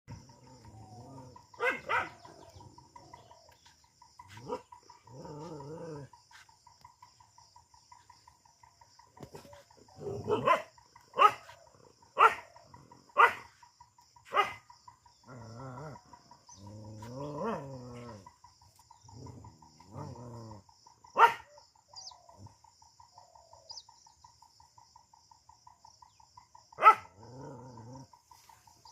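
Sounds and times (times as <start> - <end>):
drawn-out pitched animal calls: 0.1 - 28.9
dog barking: 1.4 - 2.6, 4.3 - 4.9, 10.0 - 13.6, 14.2 - 14.7, 21.1 - 21.6, 26.8 - 27.3.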